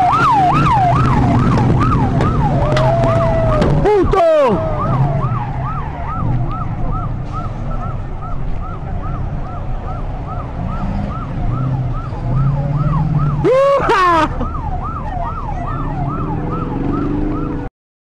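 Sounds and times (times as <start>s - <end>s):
siren wailing: 0.0s - 17.7s
vehicles rumbling: 0.0s - 17.7s.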